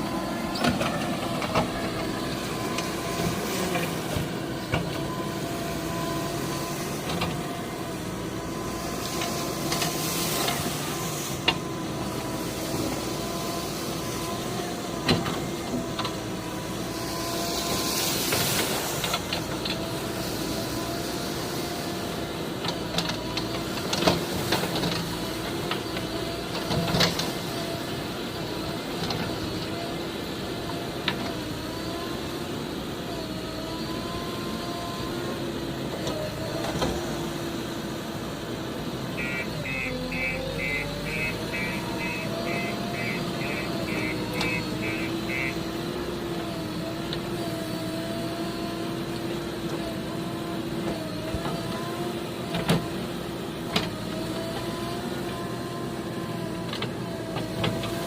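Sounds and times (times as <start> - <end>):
heavy vehicle engine running: 0.0 - 58.0
reversing alarm beeping: 39.1 - 45.9.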